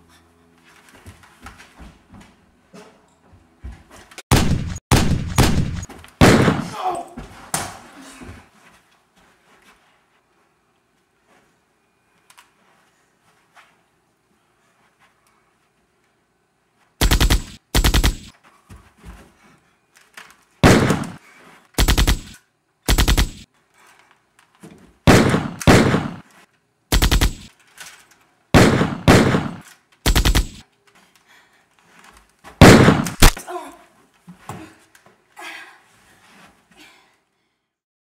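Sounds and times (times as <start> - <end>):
automatic gunfire bursts: 4.3 - 6.7, 17.0 - 18.3, 20.6 - 21.2, 21.8 - 23.4, 25.1 - 26.2, 26.9 - 27.5, 28.6 - 30.6, 32.6 - 33.4.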